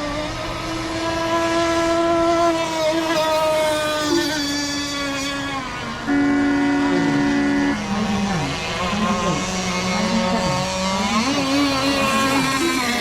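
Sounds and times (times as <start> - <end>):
model boat engines revving: 0.0 - 13.0.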